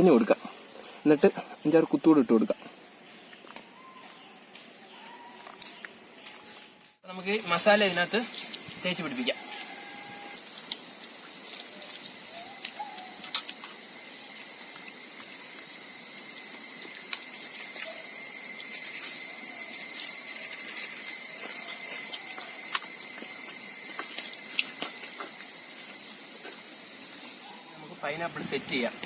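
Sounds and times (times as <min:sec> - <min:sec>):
insects droning: 0:07.0 - 0:29.0.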